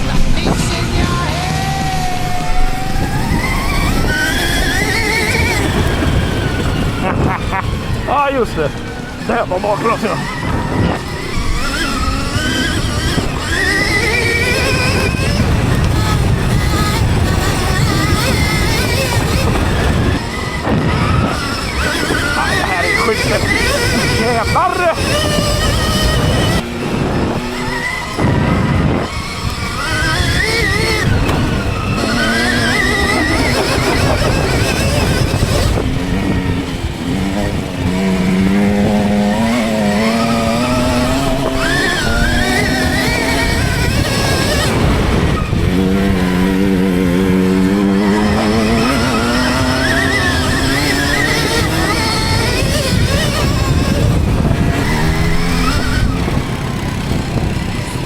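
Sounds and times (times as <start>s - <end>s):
dirt bike engines revving: 0.0s - 58.0s.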